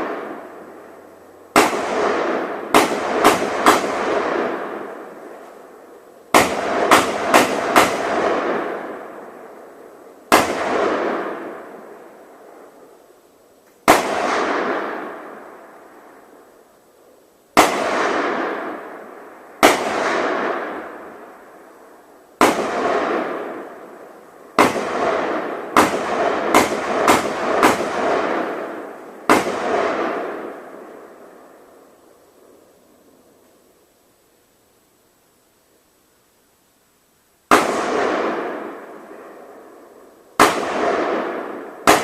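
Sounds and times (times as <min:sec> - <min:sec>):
rifle shots with ringing tail: 0:00.0 - 0:05.4, 0:06.3 - 0:12.0, 0:13.9 - 0:15.6, 0:17.6 - 0:21.4, 0:22.4 - 0:31.7, 0:37.5 - 0:42.0.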